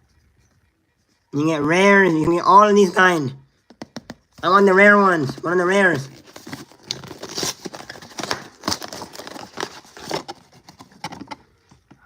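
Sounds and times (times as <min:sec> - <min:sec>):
packaging being torn and crinkled: 0:06.0 - 0:11.0.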